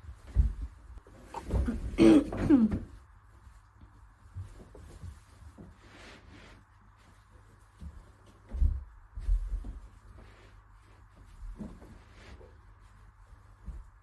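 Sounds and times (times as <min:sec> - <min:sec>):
person coughing: 0:01.4 - 0:02.9.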